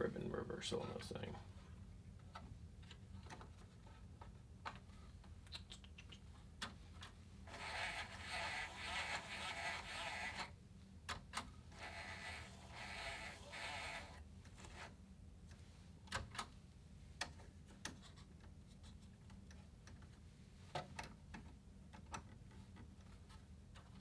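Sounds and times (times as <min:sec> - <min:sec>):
typewriter scraping and rubbing: 0:07.5 - 0:10.6, 0:11.7 - 0:14.9.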